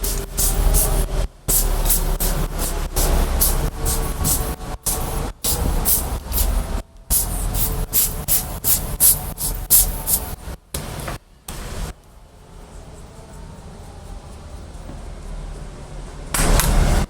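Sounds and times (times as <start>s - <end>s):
compressed air blasts: 0.0s - 10.6s.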